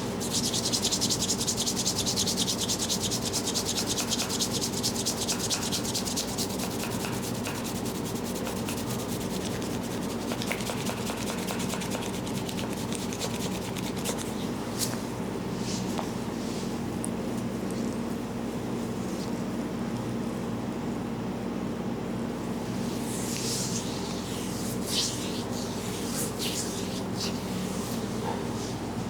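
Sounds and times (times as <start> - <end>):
steady low hum: 0.0 - 29.0
rhythmic rubbing of head massage: 0.2 - 14.3.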